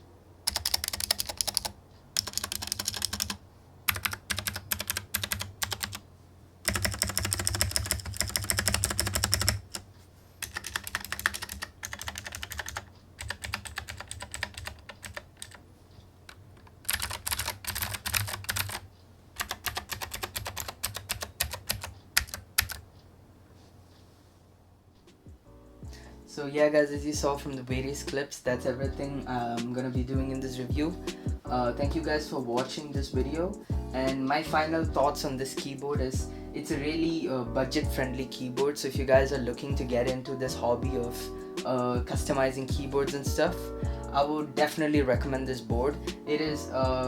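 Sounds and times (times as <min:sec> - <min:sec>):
mechanical keyboard typing: 0:00.4 - 0:06.0, 0:06.6 - 0:09.8, 0:10.4 - 0:15.6, 0:16.3 - 0:22.9.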